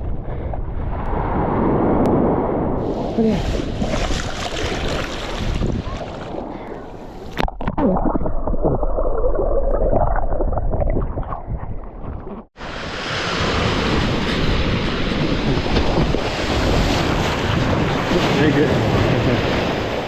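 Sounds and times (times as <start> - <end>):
wind buffeting microphone: 0.0 - 7.3, 13.4 - 20.0
surf washing: 1.6 - 7.4, 12.6 - 20.0
muffled underwater gurgling: 5.9 - 12.5.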